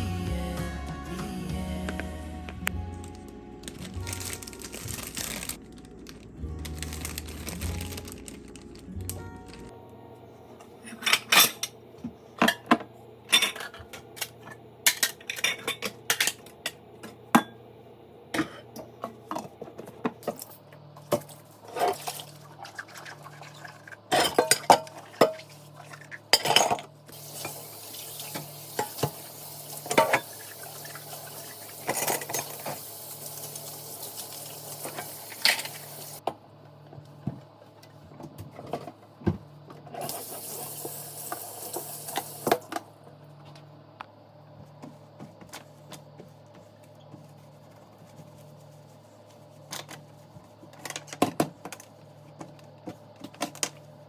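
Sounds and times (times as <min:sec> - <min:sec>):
dishes and cutlery clinking: 0:10.8 - 0:11.8, 0:24.1 - 0:25.4.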